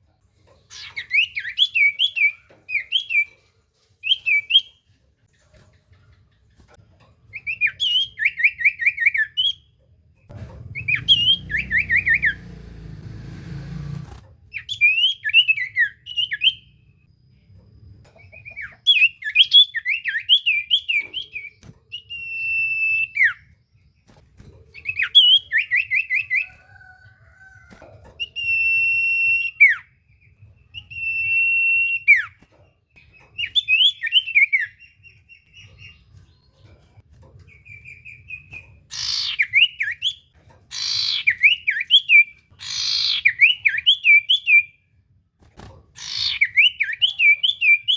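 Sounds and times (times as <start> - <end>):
bird chirping and whistling: 7.4 - 9.6, 10.7 - 12.6, 14.5 - 16.7, 18.4 - 23.4, 24.8 - 26.6, 28.2 - 29.9, 30.8 - 32.4, 33.4 - 35.9, 37.8 - 40.2, 40.8 - 44.8, 46.0 - 47.9
low rumbling noise: 10.3 - 14.2.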